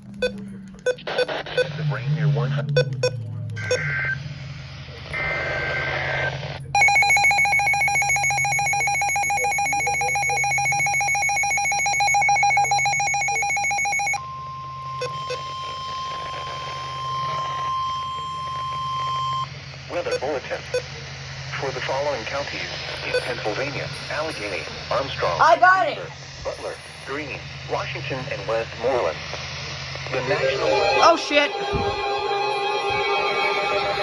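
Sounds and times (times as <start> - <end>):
steady single-pitch warning tone: 0.0 - 1.9, 2.8 - 4.4, 6.7 - 21.0
digital data bursts: 0.0 - 29.2.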